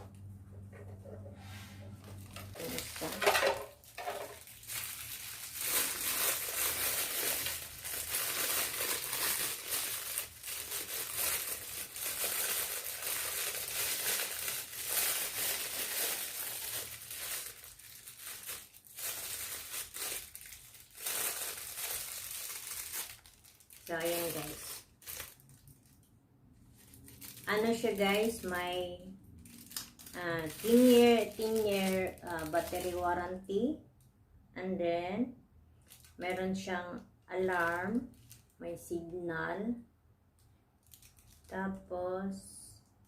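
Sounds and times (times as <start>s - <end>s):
packaging crinkling and rustling: 1.9s - 28.7s, 29.4s - 33.1s, 35.8s - 36.2s, 37.5s - 38.6s, 40.4s - 41.5s.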